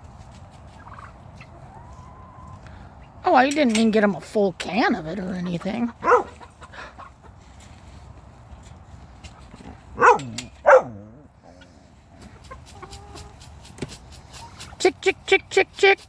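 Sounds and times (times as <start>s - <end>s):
poultry squawking: 0.7s - 2.6s, 5.2s - 7.4s, 9.4s - 13.6s.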